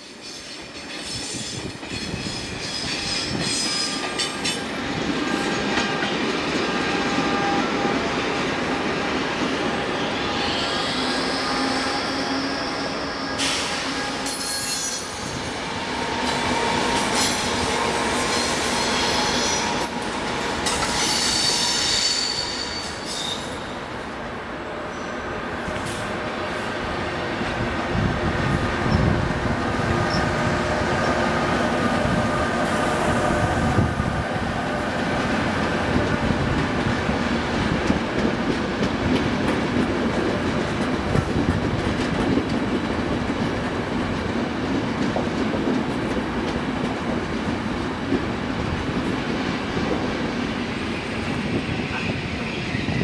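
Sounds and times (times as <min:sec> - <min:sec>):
train wheels clicking over rail joints: 0:35.0 - 0:50.2.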